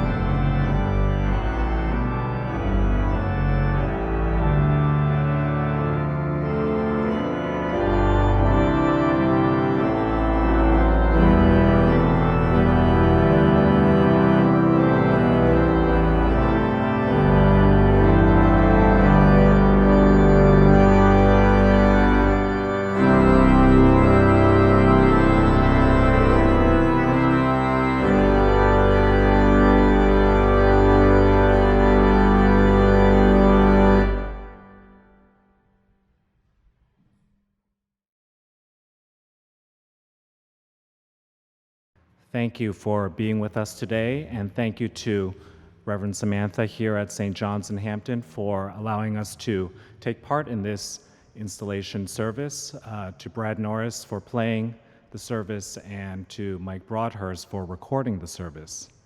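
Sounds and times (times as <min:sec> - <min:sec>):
church organ playing a hymn: 0:00.0 - 0:35.4, 0:45.9 - 0:49.6.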